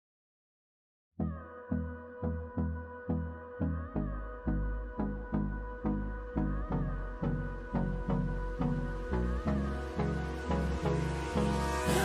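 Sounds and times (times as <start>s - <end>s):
instrumental pop music: 1.2s - 12.0s.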